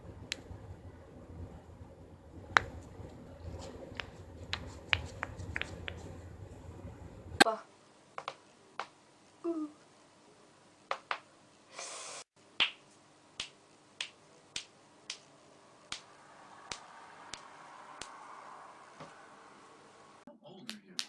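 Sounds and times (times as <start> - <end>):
sharp cracking pops: 12.6 - 15.3, 15.9 - 18.2.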